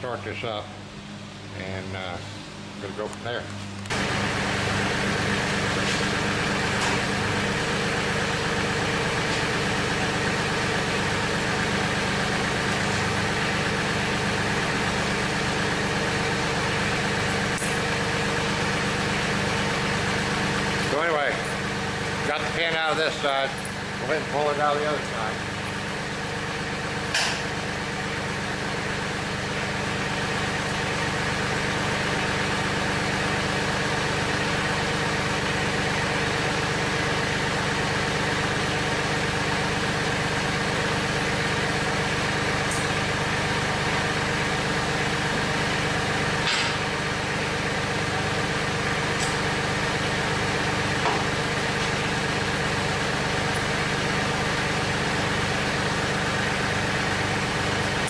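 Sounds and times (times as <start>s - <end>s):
tractor diesel engine idling: 3.9s - 58.0s.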